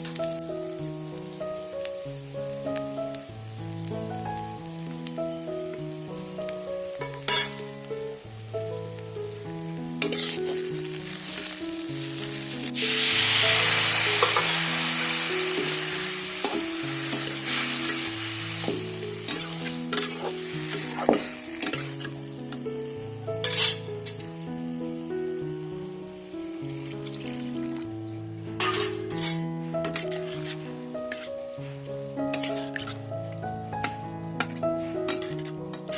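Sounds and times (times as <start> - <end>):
background music: 0.0 - 35.9
oil sizzling in a pan: 0.0 - 35.9.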